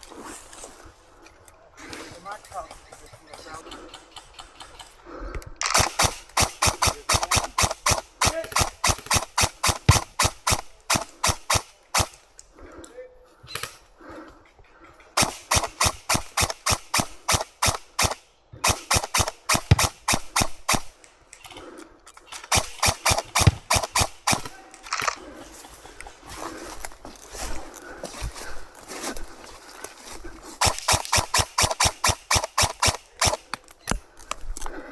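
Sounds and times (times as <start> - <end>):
airsoft guns firing: 5.6 - 12.2, 15.2 - 21.0, 22.5 - 25.2, 30.6 - 33.6.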